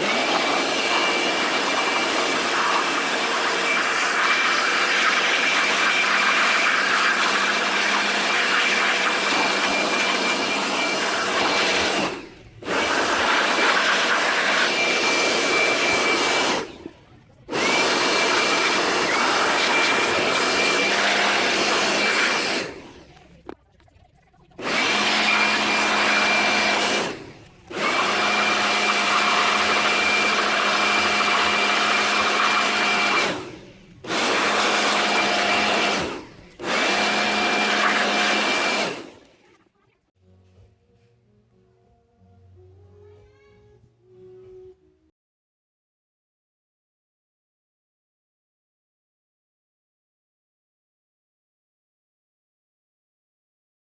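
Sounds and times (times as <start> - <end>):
electric cleaning tool whining: 0.0 - 23.5, 24.6 - 39.4.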